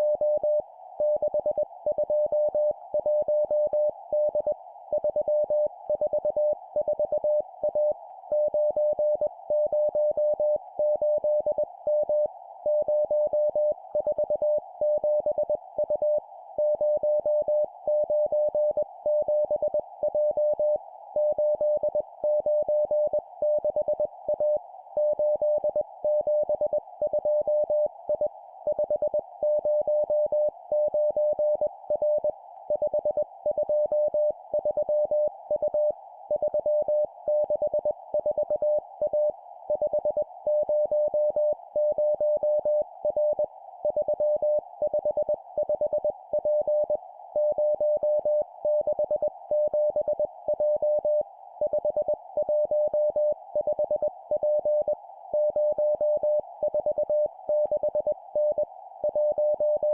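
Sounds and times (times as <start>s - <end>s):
morse code beeps: 28.7s - 59.9s.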